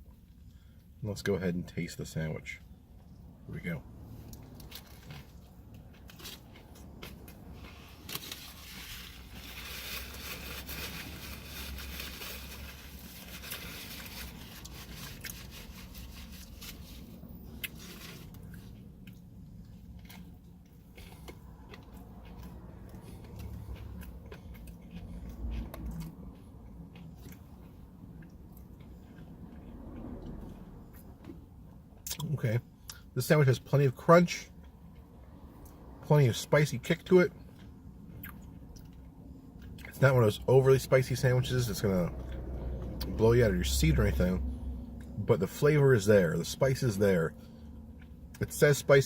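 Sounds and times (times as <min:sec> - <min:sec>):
chewing crispy food: 0:04.2 - 0:32.2.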